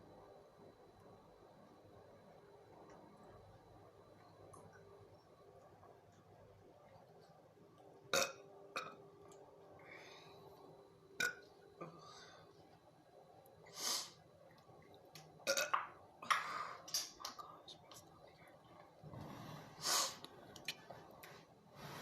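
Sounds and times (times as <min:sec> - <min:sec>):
woman burping: 0:08.1 - 0:09.0, 0:15.4 - 0:15.8.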